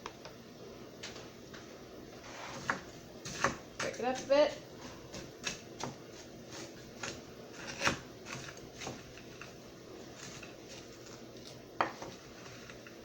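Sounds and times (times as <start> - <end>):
frozen fruit clicking and knocking: 2.6 - 13.0.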